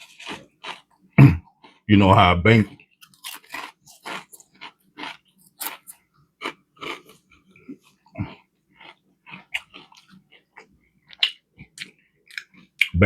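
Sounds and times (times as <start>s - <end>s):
person chewing food: 0.0s - 1.9s, 2.5s - 13.0s.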